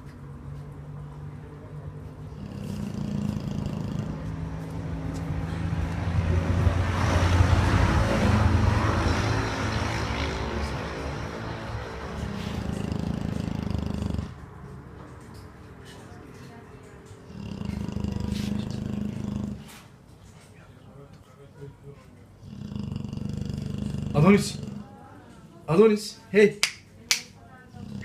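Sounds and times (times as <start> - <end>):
dog snoring: 2.2 - 5.6, 6.6 - 14.5, 17.3 - 19.9, 22.4 - 25.0, 27.7 - 28.0.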